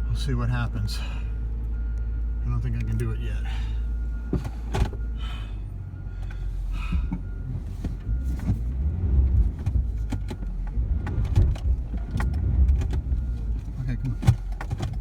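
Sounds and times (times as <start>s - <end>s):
vehicle engine rumbling: 0.0s - 15.0s
sharp clicks and knocks: 9.6s - 13.1s, 14.1s - 15.0s.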